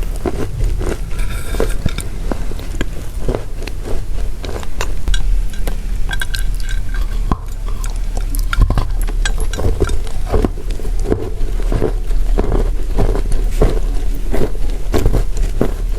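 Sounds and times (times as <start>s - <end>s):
crunching and chewing chalk: 3.9s - 15.9s.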